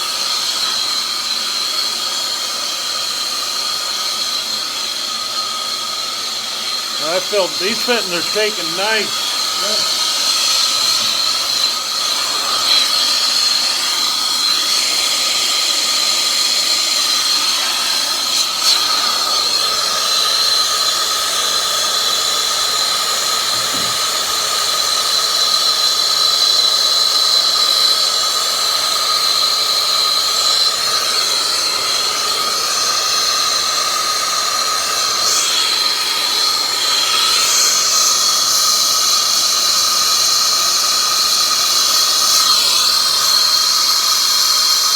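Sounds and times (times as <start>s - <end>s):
torch flame hissing: 0.0s - 44.9s
high steady whistling tone: 0.2s - 21.3s.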